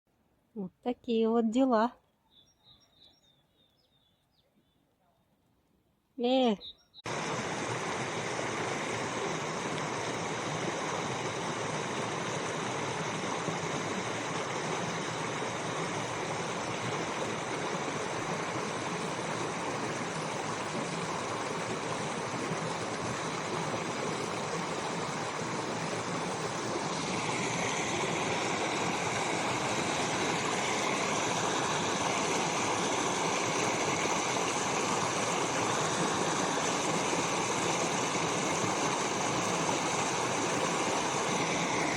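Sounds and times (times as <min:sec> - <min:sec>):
brook running over stones: 0:07.0 - 0:41.9.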